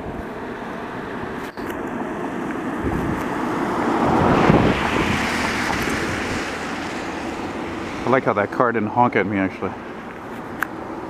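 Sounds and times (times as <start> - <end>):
car driving past: 2.3 - 8.1.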